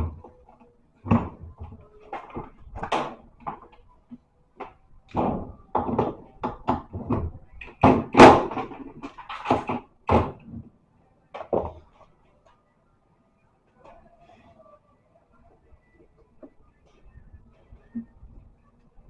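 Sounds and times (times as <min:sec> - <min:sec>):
parts and tools knocking and rattling: 0:00.0 - 0:03.8, 0:04.6 - 0:10.6.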